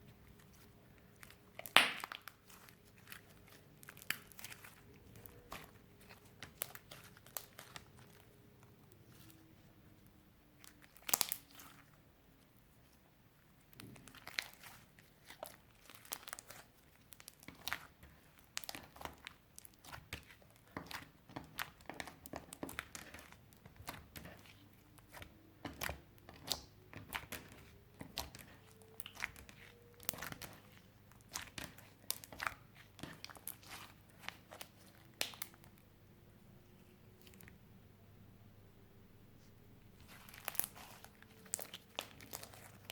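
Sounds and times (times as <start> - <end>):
slime popping and crackling: 1.1 - 8.2, 10.6 - 11.8, 13.7 - 35.8, 40.0 - 42.9.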